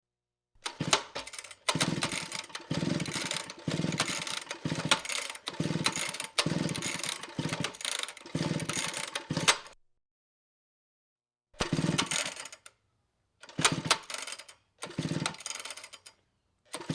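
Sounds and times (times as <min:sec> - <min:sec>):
chainsaw running in surges: 0:00.6 - 0:09.7, 0:11.6 - 0:12.6, 0:13.5 - 0:16.1.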